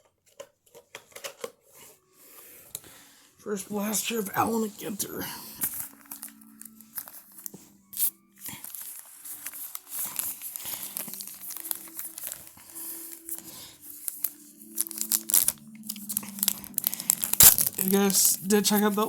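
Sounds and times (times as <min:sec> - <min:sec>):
plastic packaging crinkling and tearing: 0:00.0 - 0:02.2, 0:04.0 - 0:19.0.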